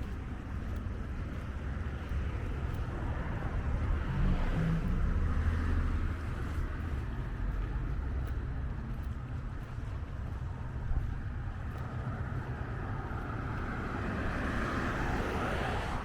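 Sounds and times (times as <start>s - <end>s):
vehicle passing: 2.0s - 9.0s, 10.8s - 16.0s.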